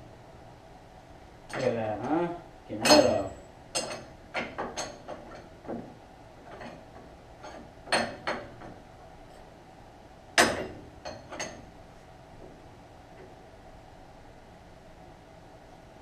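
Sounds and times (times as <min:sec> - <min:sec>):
metal tools clanking: 0:02.8 - 0:04.1.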